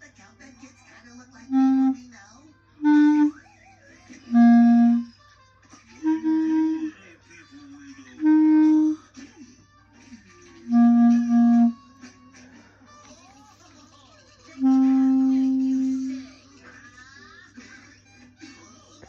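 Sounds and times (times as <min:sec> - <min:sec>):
clarinet held notes: 0:01.5 - 0:02.0, 0:02.8 - 0:03.5, 0:04.3 - 0:05.2, 0:06.0 - 0:07.0, 0:08.2 - 0:09.0, 0:10.7 - 0:11.9, 0:14.6 - 0:16.3.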